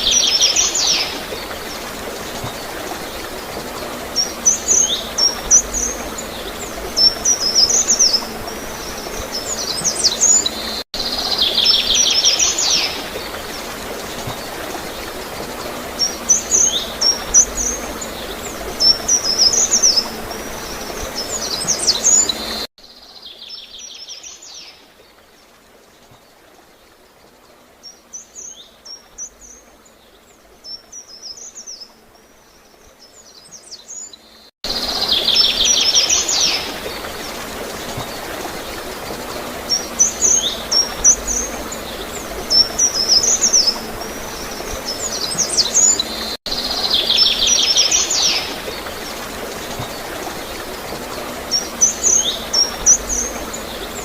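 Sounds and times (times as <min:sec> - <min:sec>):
gurgling water: 0:00.0 - 0:22.7, 0:34.7 - 0:54.0
songbirds chirping: 0:00.0 - 0:54.0.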